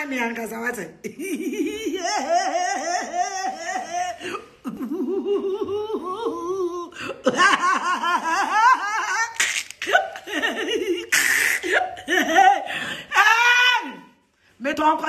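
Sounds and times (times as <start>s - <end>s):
person laughing heartily: 1.1s - 12.8s.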